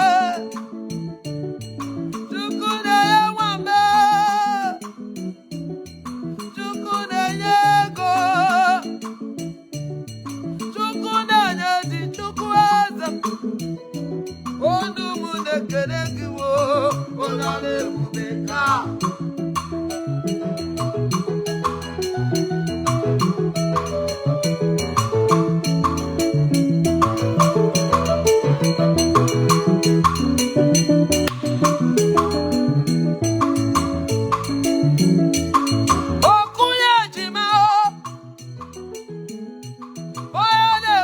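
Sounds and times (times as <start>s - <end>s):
person singing with vibrato: 0.0s - 0.6s, 2.3s - 4.8s, 6.6s - 9.1s, 10.8s - 13.4s, 14.6s - 19.2s, 36.2s - 38.1s
plucked guitar: 0.0s - 41.0s
steady bass line: 17.9s - 36.3s.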